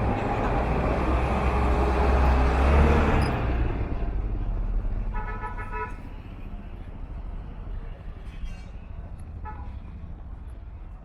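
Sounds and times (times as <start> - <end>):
vehicle engine rumble passing: 0.0 - 5.2.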